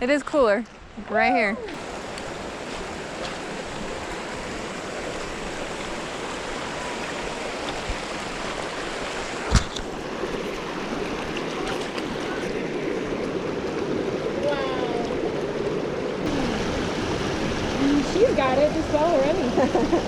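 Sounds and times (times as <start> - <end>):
creek water rushing: 0.0 - 20.0.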